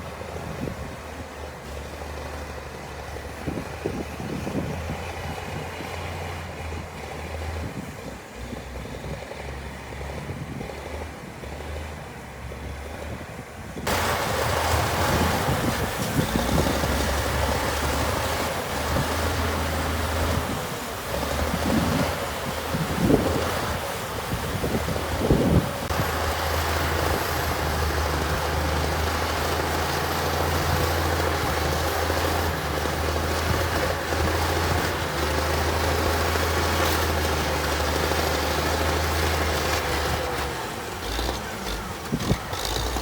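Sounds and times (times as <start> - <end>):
diesel engine droning: 0.0 - 43.0
wind blowing on microphone: 0.2 - 1.3, 3.4 - 9.3, 12.9 - 28.9, 41.4 - 43.0.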